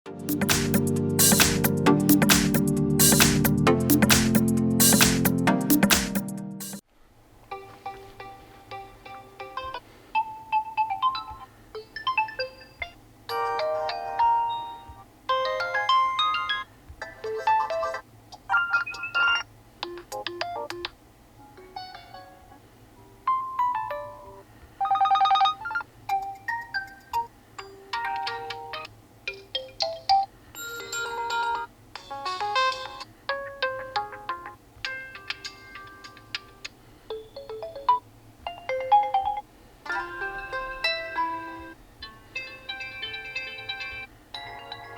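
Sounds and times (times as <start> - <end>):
phone ringtone melodies: 9.0 - 20.7, 23.4 - 36.4, 37.1 - 44.9
trilling phone bell ring: 24.9 - 25.8, 30.6 - 31.7, 38.6 - 44.9.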